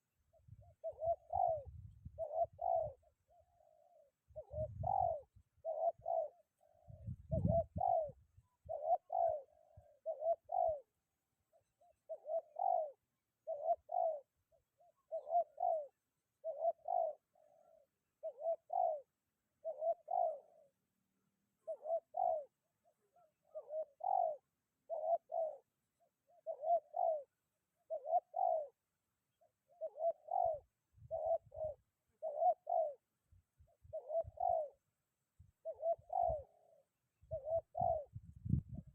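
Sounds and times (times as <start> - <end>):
dove cooing: 0.0 - 20.8, 21.6 - 28.8, 29.4 - 34.9, 35.6 - 38.9
wind rumble on microphone: 1.5 - 2.9, 4.3 - 5.2, 6.9 - 8.4, 37.2 - 38.9.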